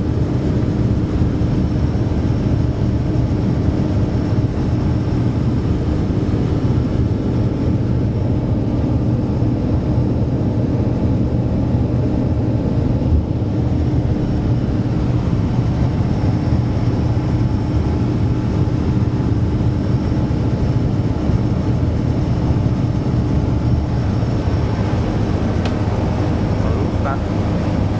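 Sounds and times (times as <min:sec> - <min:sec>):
boat engines droning: 0:23.4 - 0:27.9.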